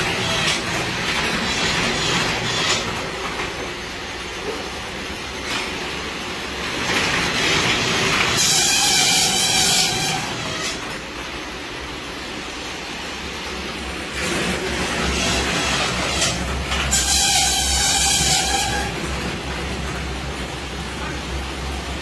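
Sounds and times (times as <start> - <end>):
machine mechanical clatter: 0.0 - 12.0, 13.4 - 22.0
hiss with steady whine: 10.3 - 22.0.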